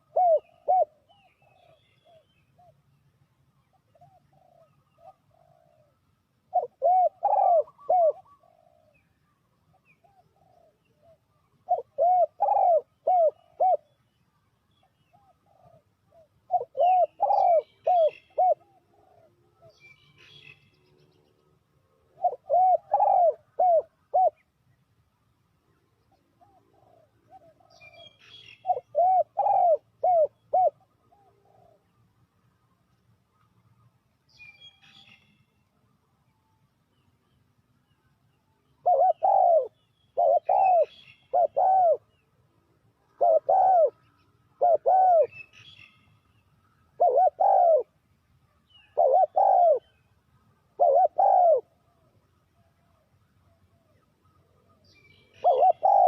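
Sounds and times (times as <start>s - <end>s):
dove cooing: 0.0s - 2.9s, 3.7s - 14.0s, 14.9s - 20.7s, 21.8s - 24.4s, 26.3s - 32.0s, 38.6s - 42.2s, 43.0s - 45.8s, 46.8s - 48.0s, 48.8s - 52.2s, 55.3s - 56.0s.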